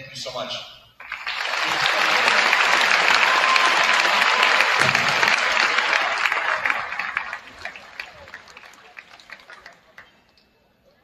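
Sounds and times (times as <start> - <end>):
crowd applauding: 1.0 - 10.4.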